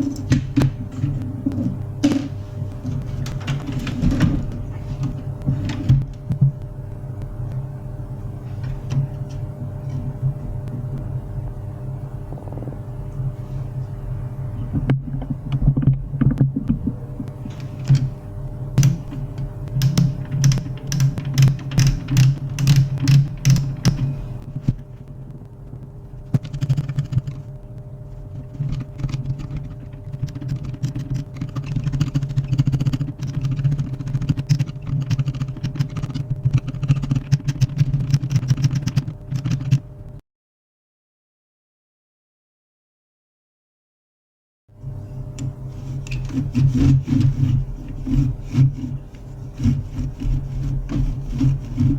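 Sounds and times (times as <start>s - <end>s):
printer clicking and rattling: 18.8s - 19.2s, 19.8s - 24.1s, 28.6s - 39.8s
laser printer motor hum: 44.8s - 51.9s.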